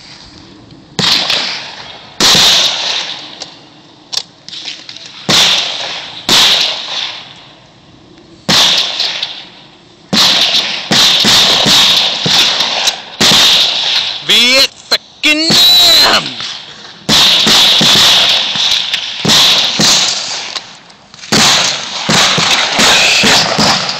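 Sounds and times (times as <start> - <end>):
faint gunshots: 1.0 - 3.4, 4.5 - 7.4, 8.5 - 14.7, 15.4 - 23.9
loud gunshots: 1.0 - 3.4, 5.2 - 7.4, 8.5 - 14.7, 15.3 - 20.6, 21.3 - 23.9.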